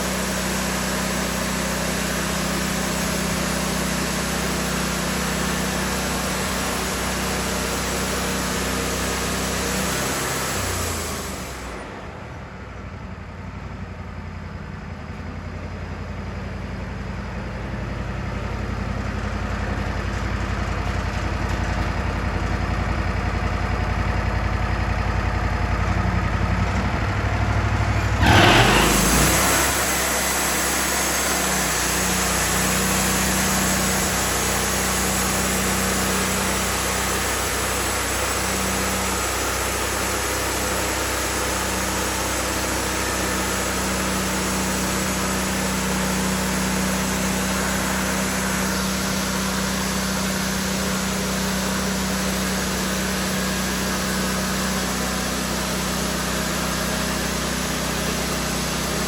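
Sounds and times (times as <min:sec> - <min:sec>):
band sawmill running: 0:00.0 - 0:12.4, 0:17.0 - 0:59.0
sudden loud burst: 0:28.0 - 0:30.4.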